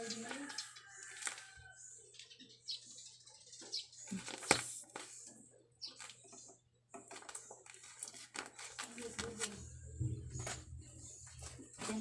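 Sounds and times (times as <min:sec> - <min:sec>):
paper and tape crinkling: 0:00.0 - 0:01.6, 0:04.1 - 0:06.3, 0:06.9 - 0:09.7, 0:11.3 - 0:12.0.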